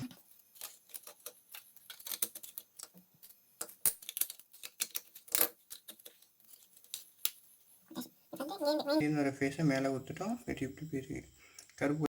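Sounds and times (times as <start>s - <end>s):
clicks and knocks of wiring work: 0.0s - 7.4s.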